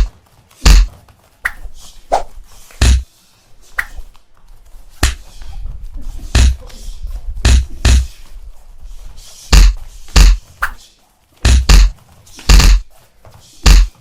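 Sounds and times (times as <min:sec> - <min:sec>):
punches and kicks landing with thuds: 0:00.0 - 0:03.0, 0:09.5 - 0:10.5, 0:11.4 - 0:12.9, 0:13.6 - 0:14.0.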